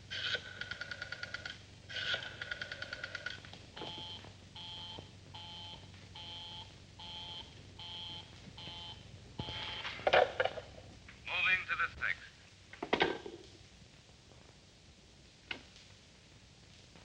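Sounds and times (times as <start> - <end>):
telephone busy signal: 3.8 - 10.0.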